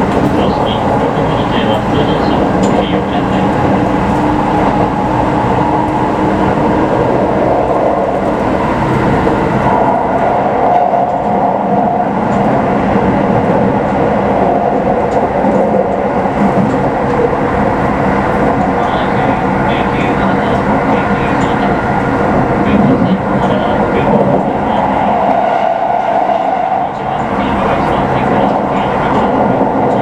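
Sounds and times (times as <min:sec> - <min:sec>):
running gear hum: 0:00.0 - 0:10.3
train wheels rumbling on track: 0:00.0 - 0:30.0.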